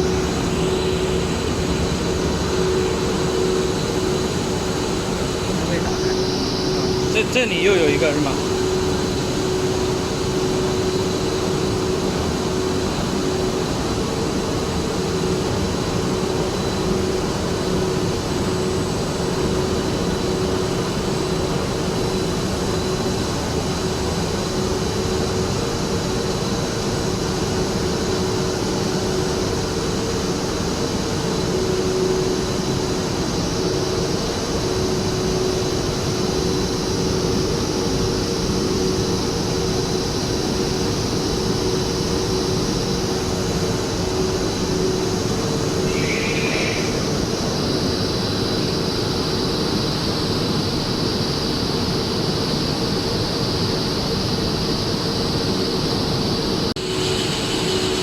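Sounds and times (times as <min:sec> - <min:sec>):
factory machinery hum: 0:00.0 - 0:58.0
machine whining tones: 0:28.2 - 0:49.8.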